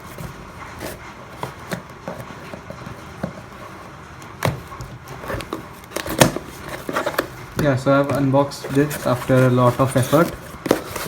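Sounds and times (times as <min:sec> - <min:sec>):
packaging clicks and knocks: 0:04.2 - 0:11.0.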